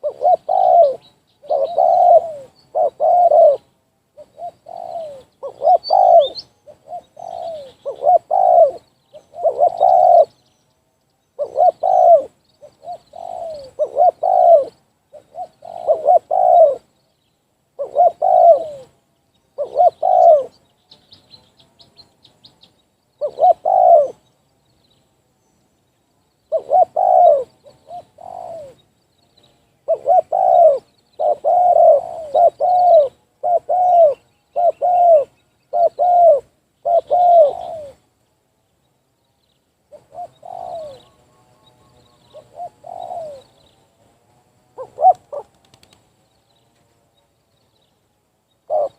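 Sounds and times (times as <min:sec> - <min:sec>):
doves cooing: 0:00.0 - 0:10.4, 0:11.4 - 0:16.9, 0:17.8 - 0:20.6, 0:23.2 - 0:24.3, 0:26.5 - 0:28.9, 0:29.8 - 0:38.2, 0:39.9 - 0:43.8, 0:44.7 - 0:46.1, 0:48.6 - 0:48.9
small bird chirping: 0:00.0 - 0:44.0.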